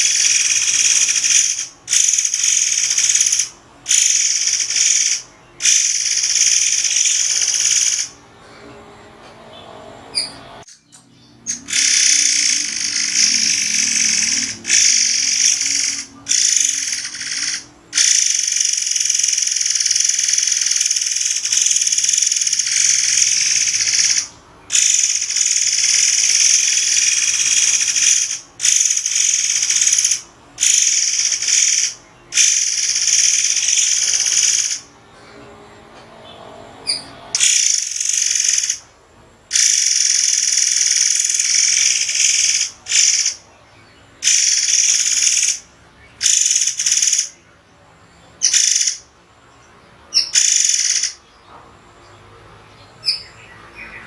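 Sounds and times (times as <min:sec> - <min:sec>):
bird giving shrill high calls: 0:00.0 - 0:08.2, 0:11.5 - 0:34.9, 0:36.9 - 0:38.8, 0:39.5 - 0:43.4, 0:44.2 - 0:45.6, 0:46.2 - 0:47.3, 0:48.4 - 0:49.0, 0:50.2 - 0:51.2.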